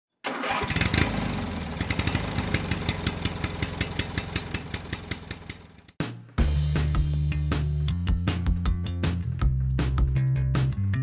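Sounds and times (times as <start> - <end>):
small engine running: 0.3 - 5.9
music with low notes: 6.0 - 11.0.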